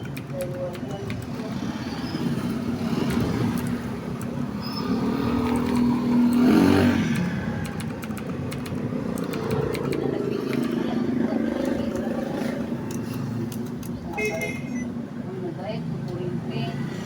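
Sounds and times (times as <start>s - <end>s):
motor vehicle passing: 1.4s - 14.1s.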